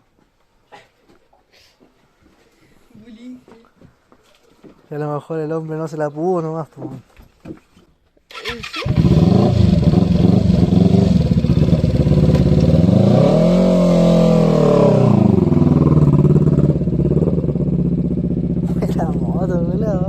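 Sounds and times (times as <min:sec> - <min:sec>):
motorcycle engine revving: 0:08.4 - 0:20.0.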